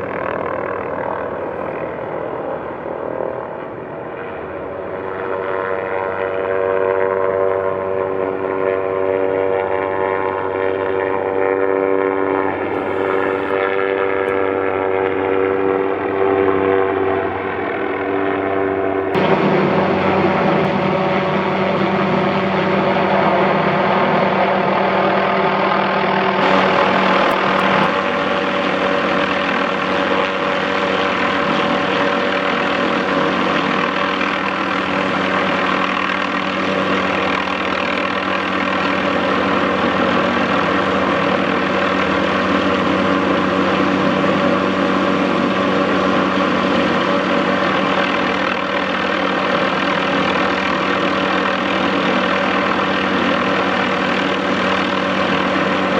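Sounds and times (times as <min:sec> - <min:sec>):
helicopter engine and rotors: 0:00.0 - 0:55.9.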